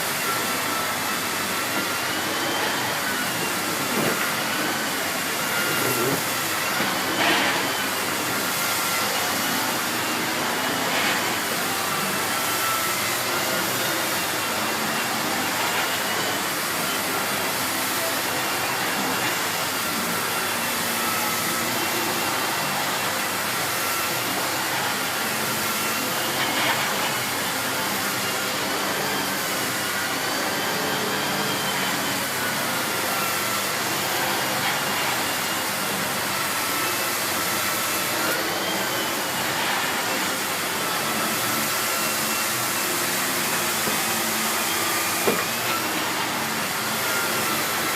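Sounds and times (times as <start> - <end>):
vacuum cleaner running: 0.0 - 47.9.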